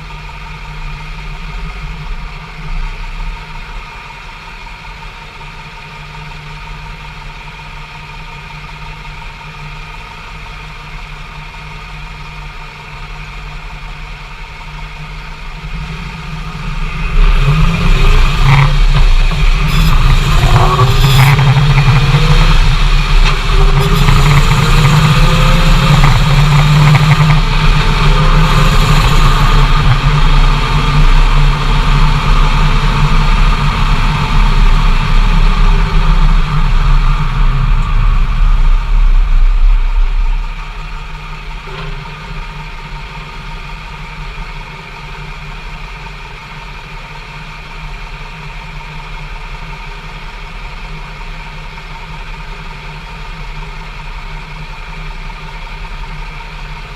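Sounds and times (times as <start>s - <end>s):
truck engine accelerating: 10.7s - 46.0s.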